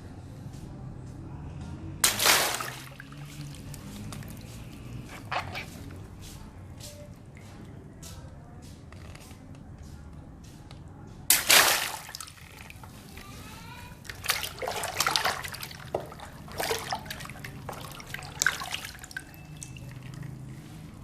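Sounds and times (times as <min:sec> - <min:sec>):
water balloon bursting: 0:02.0 - 0:05.7, 0:11.3 - 0:13.3
water splashing and dripping: 0:02.0 - 0:06.3, 0:11.3 - 0:21.0.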